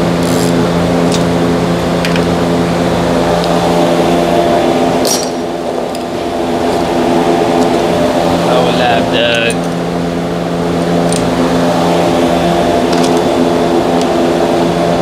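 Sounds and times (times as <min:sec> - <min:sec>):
steady machine hum: 0:00.0 - 0:15.0
tools clinking on metal: 0:05.0 - 0:05.4.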